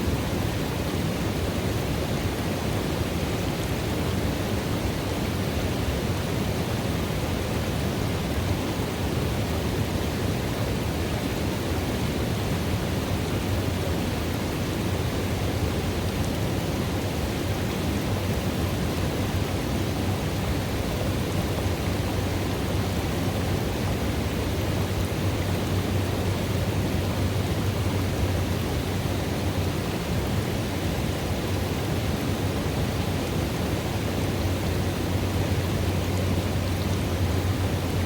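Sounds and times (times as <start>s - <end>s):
river water rushing: 0.0s - 38.0s.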